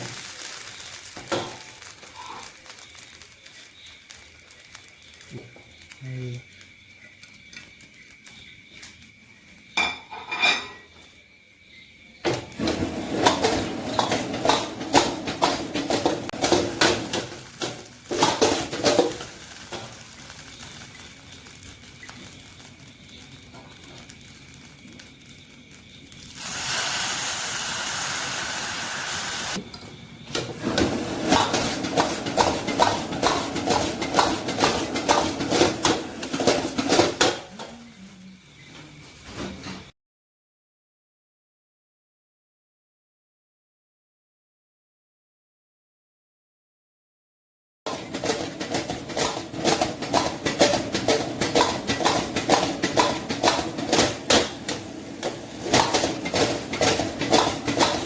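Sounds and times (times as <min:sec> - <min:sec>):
steady hiss: 0:00.0 - 0:09.8, 0:11.1 - 0:36.7.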